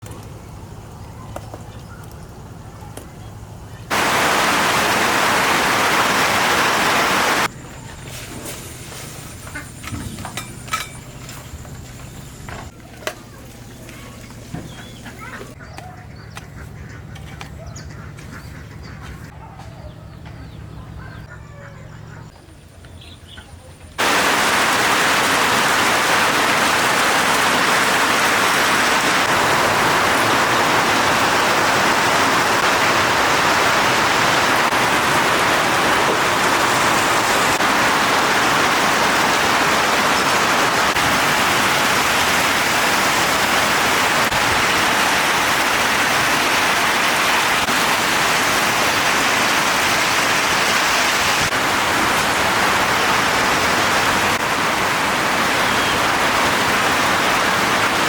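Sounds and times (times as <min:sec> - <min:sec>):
heavy rain falling: 0:03.8 - 0:07.5, 0:24.0 - 0:58.0.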